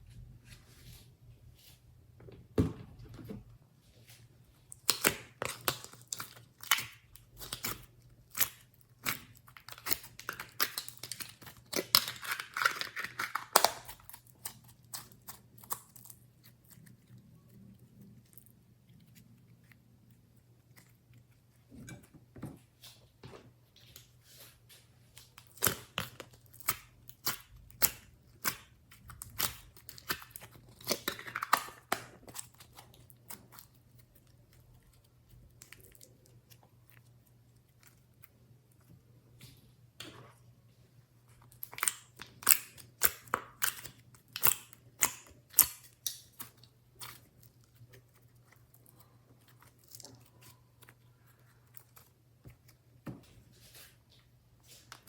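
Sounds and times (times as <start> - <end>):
hands squishing slime: 4.6 - 21.7, 25.1 - 39.4.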